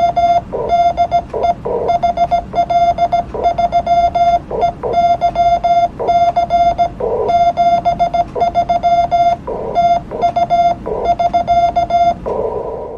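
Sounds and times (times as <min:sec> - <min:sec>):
morse code beeps: 0:00.0 - 0:12.5.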